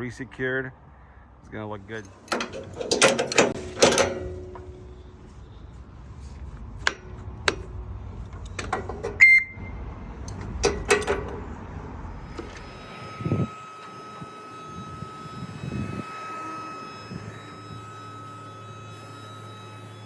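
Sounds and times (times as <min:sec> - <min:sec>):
boom lift engine hum: 0:01.8 - 0:20.0
sharp metal clanks and clicks: 0:02.0 - 0:04.9, 0:10.3 - 0:11.5
short beep: 0:09.2 - 0:09.8
high-pitched whine: 0:12.1 - 0:20.0.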